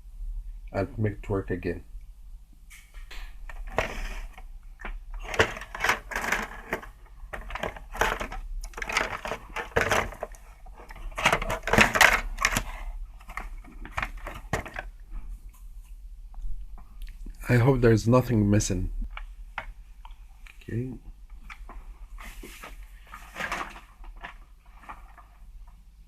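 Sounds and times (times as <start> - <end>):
small parts clicking and rattling: 5.1 - 14.9.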